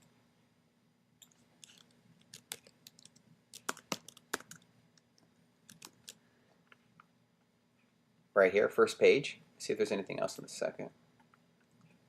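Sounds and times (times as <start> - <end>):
typing on computer keyboard: 1.2 - 4.6, 5.7 - 6.2.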